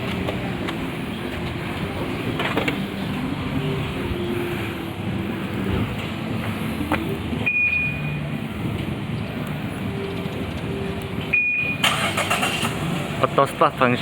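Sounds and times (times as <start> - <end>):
high electronic beeps: 7.4 - 8.3.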